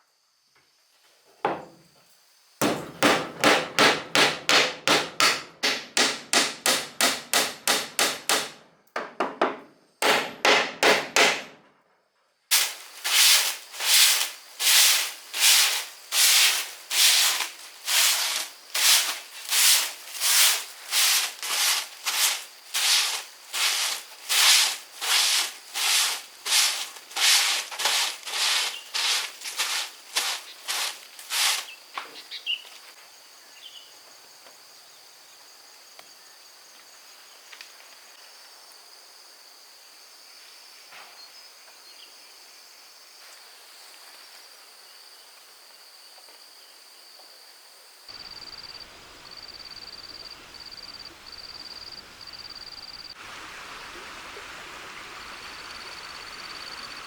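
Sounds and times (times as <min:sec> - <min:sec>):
hand tool stroking wood: 0:12.5 - 0:31.7.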